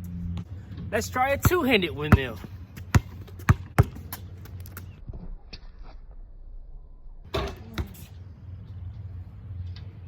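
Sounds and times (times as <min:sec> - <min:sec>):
basketball bouncing: 0:01.4 - 0:04.3.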